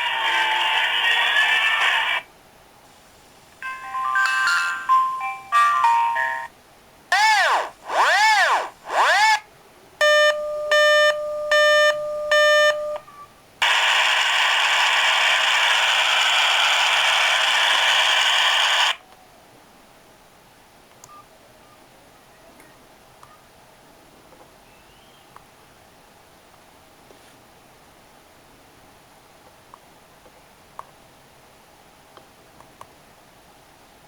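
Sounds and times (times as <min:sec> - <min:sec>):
steady hiss: 0:01.8 - 0:03.7.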